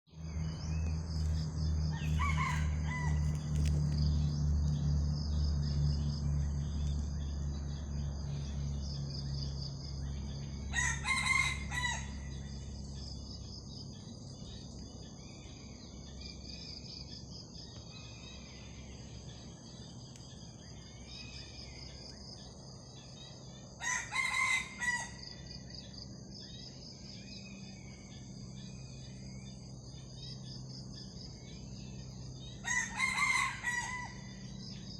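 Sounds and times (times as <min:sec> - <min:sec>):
low hum: 0:00.1 - 0:23.8
roosters crowing: 0:01.9 - 0:03.7, 0:10.6 - 0:12.6, 0:23.8 - 0:25.3, 0:32.6 - 0:34.6.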